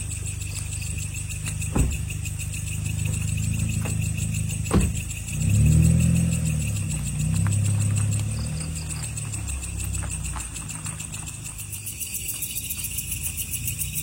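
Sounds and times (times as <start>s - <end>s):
car engine running: 0.0s - 14.0s
sharp thuds: 1.4s - 2.4s, 3.0s - 5.4s.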